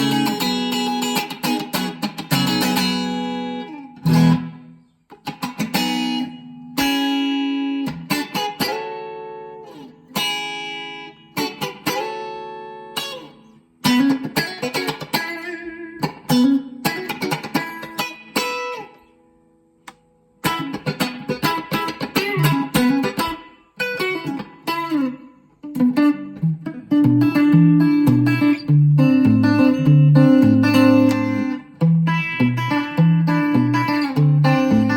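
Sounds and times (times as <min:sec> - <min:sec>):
electric guitar chords and notes: 0:00.0 - 0:34.9.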